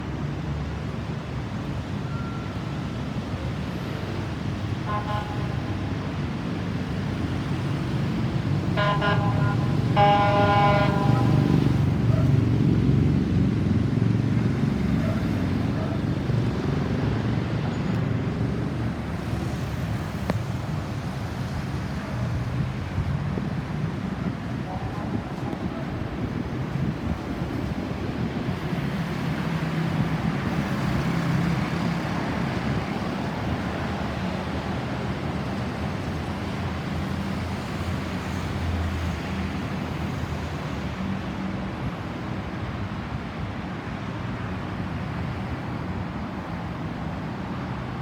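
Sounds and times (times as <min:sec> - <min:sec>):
road traffic rumbling: 0:00.0 - 0:48.0
vehicle horn blasts: 0:04.9 - 0:05.6, 0:08.8 - 0:11.6.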